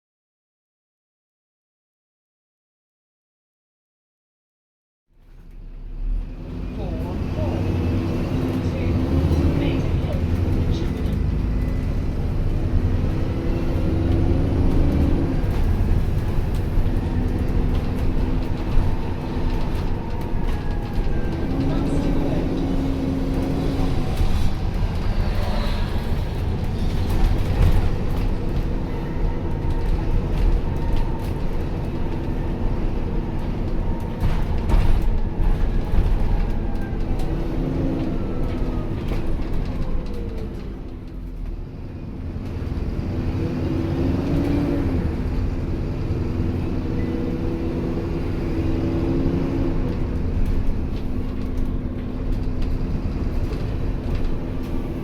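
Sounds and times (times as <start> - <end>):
bus engine rumbling: 5.2 - 55.0.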